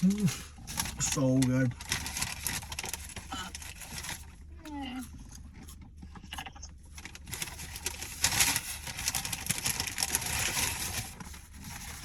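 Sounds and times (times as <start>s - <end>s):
rustling and crunching: 0.0s - 12.0s
chewing with wet mouth clicks: 5.0s - 6.9s.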